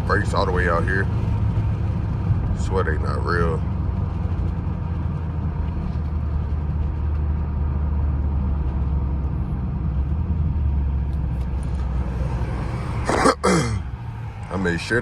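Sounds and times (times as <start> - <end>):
car engine droning: 0.0 - 15.0
tyre noise on wet road: 8.7 - 15.0.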